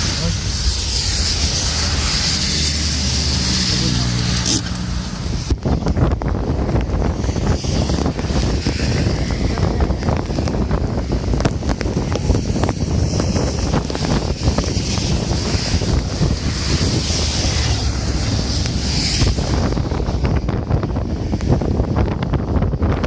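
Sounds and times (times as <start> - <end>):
rain hissing: 0.0 - 22.6
wind buffeting microphone: 0.0 - 23.0
raindrops ticking close by: 4.4 - 19.3.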